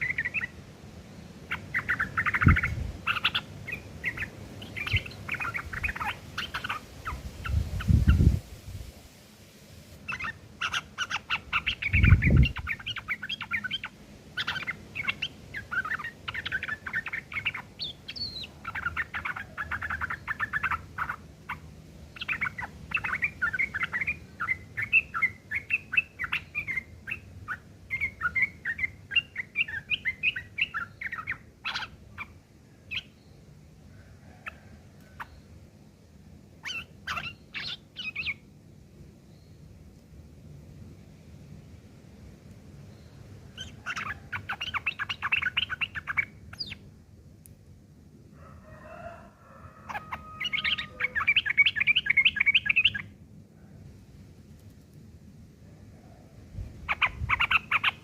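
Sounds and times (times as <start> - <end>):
bird chattering song: 0.0 - 0.6, 1.4 - 8.4, 10.0 - 33.4, 36.6 - 38.5, 42.9 - 46.9, 49.9 - 53.2, 56.8 - 58.0.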